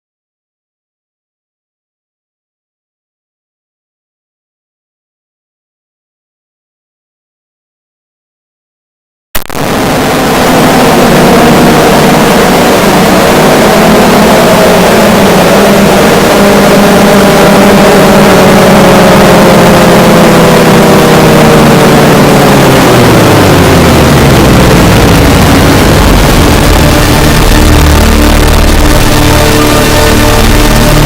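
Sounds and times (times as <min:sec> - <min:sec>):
droning pitched tone: 0:09.4 - 0:31.0
loud distorted noise: 0:09.4 - 0:31.0.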